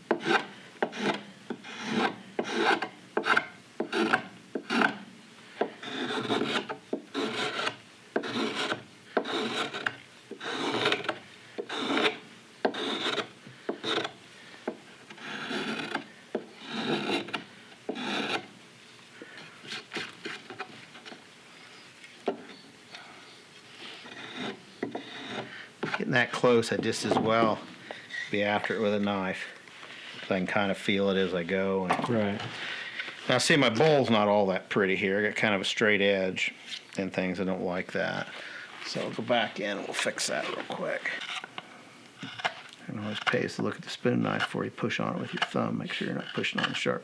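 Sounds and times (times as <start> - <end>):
carving tool scraping wood: 0.0 - 18.6, 19.4 - 21.2, 23.6 - 28.8, 39.0 - 41.6, 42.2 - 46.9.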